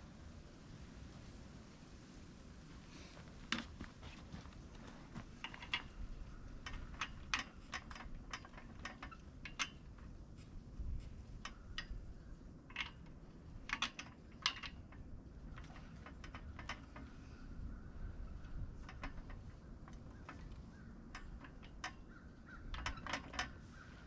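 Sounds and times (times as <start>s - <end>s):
metal parts clicking and clinking: 5.4s - 10.1s, 12.7s - 17.2s, 18.4s - 23.8s.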